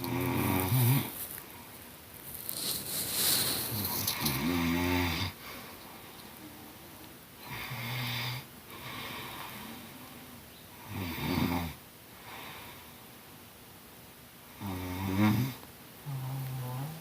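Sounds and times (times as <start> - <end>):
person snoring: 0.0 - 1.2, 3.1 - 5.4, 14.6 - 17.0
breathing: 5.4 - 6.0, 8.7 - 9.8, 12.2 - 13.0.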